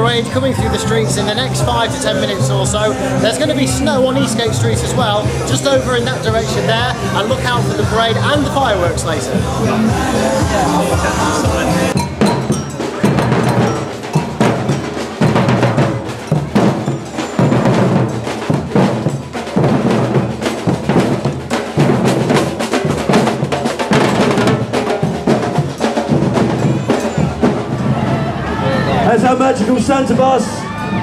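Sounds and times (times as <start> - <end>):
drums playing fast rhythm: 0.0 - 30.5.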